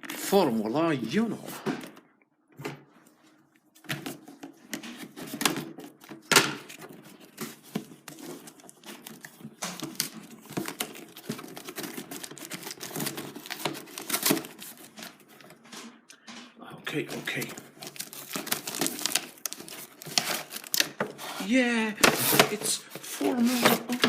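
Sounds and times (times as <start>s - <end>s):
packaging crinkling and tearing: 3.7s - 15.8s, 17.0s - 24.0s.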